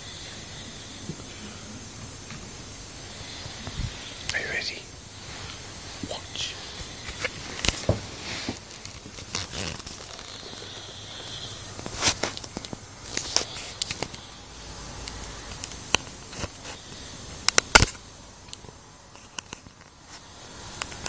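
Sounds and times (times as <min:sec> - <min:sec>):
man breathing: 0:03.0 - 0:08.7, 0:10.2 - 0:11.8.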